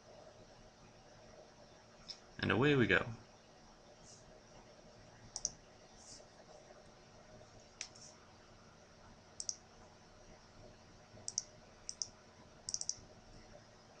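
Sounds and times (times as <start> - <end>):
computer mouse button clicks: 9.4 - 9.6, 12.7 - 13.0.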